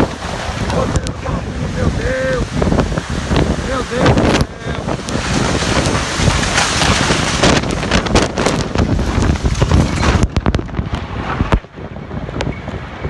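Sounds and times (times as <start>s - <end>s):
wind gusts on microphone: 0.0s - 13.0s
knocks and rattles: 5.0s - 11.6s.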